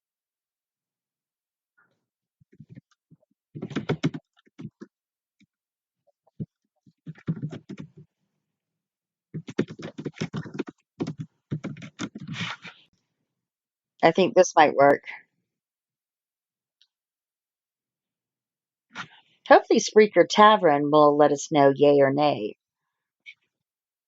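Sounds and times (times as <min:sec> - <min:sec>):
typing on computer keyboard: 0:03.6 - 0:04.9, 0:07.1 - 0:07.9, 0:09.4 - 0:12.3.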